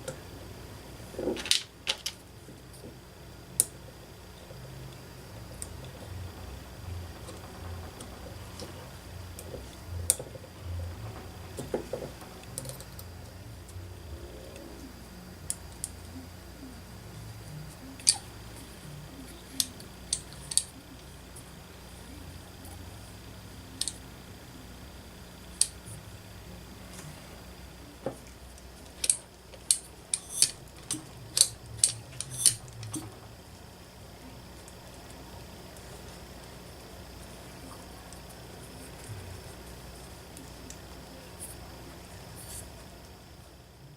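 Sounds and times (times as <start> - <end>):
steady low hum: 0.0 - 43.9
metal parts and tools clicking: 29.0 - 33.2.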